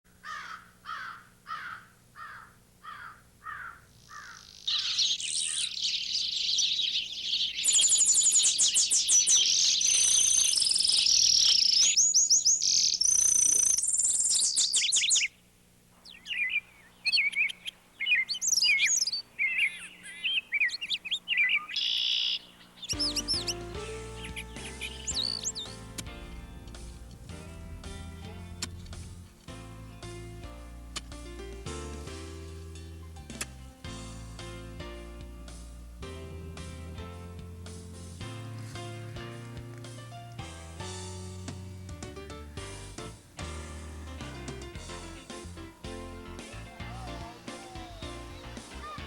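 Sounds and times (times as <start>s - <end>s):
birds trilling: 0.2s - 30.4s, 46.4s - 49.0s
songbirds singing: 0.2s - 31.3s, 44.9s - 49.0s
short falling bird notes: 16.0s - 27.0s.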